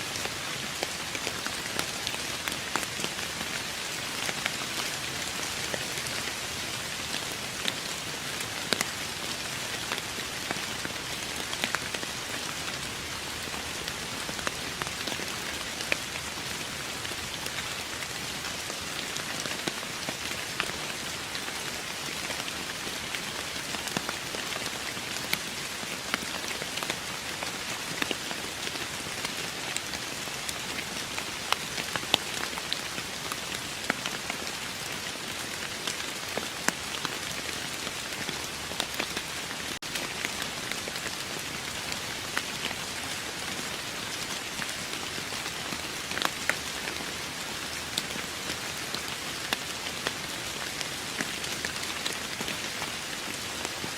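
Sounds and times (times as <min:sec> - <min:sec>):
steady rain hissing: 0:00.0 - 0:53.9.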